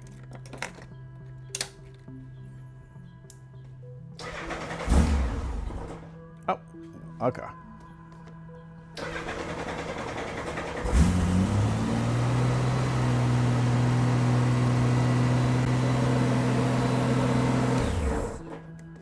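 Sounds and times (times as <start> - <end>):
motorcycle engine cranking on starter: 4.2 - 6.1, 9.0 - 18.8.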